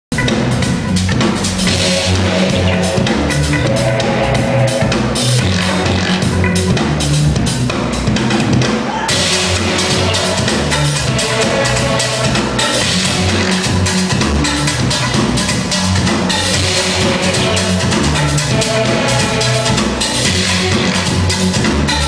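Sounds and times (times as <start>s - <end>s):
fast dense drumming: 0.1s - 22.0s
repeating low notes: 0.5s - 8.0s.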